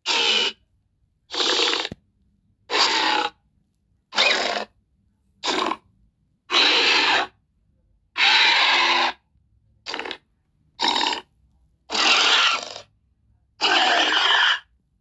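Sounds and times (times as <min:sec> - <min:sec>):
harsh raspy dinosaur calls: 0:00.0 - 0:00.6, 0:01.3 - 0:02.0, 0:02.7 - 0:03.4, 0:04.1 - 0:04.8, 0:05.4 - 0:05.9, 0:06.5 - 0:07.4, 0:08.1 - 0:09.2, 0:09.8 - 0:11.3, 0:11.9 - 0:12.9, 0:13.6 - 0:14.7.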